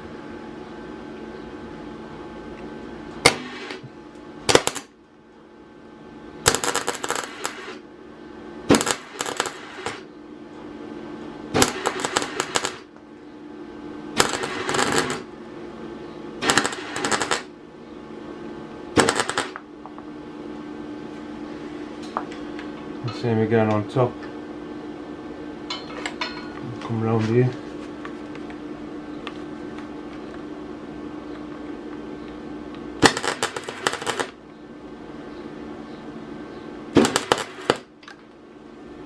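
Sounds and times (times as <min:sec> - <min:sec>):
steady hum: 0:00.0 - 0:39.0
welding arc crackling: 0:04.5 - 0:05.0, 0:06.4 - 0:07.8, 0:08.7 - 0:10.1, 0:11.5 - 0:12.9, 0:14.2 - 0:15.3, 0:16.4 - 0:17.5, 0:19.0 - 0:19.6, 0:33.0 - 0:34.4, 0:37.0 - 0:37.9.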